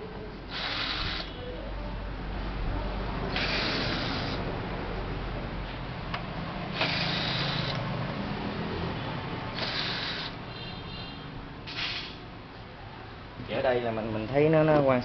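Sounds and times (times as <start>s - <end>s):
steady background noise: 0.0s - 15.0s.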